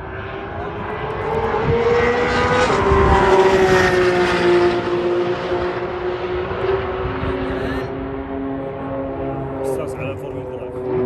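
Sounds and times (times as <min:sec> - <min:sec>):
sports car engine revving hard: 0:00.3 - 0:11.0.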